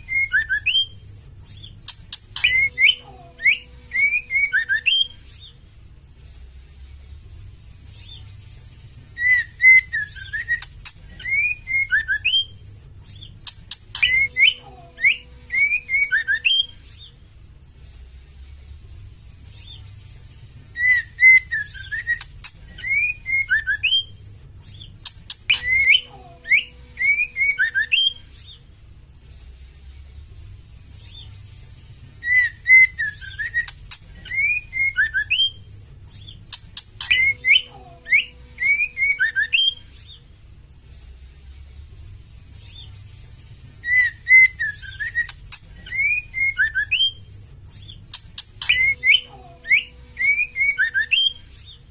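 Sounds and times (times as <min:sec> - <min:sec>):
bird whistled calls and chirps: 0:00.0 - 0:06.6, 0:07.9 - 0:18.0, 0:19.5 - 0:29.5, 0:31.0 - 0:41.0, 0:42.5 - 0:51.9
bird sharp clicks: 0:25.0 - 0:26.0, 0:36.5 - 0:37.3, 0:48.1 - 0:49.0.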